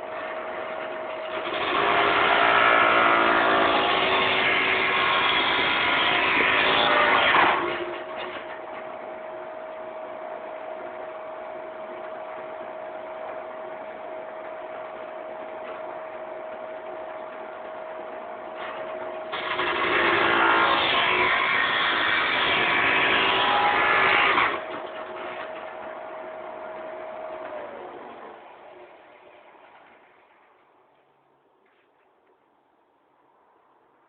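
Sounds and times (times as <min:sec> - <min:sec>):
cut-off machine motor whining: 0:00.0 - 0:30.6
blade cutting workpiece: 0:00.1 - 0:08.6, 0:18.6 - 0:29.4.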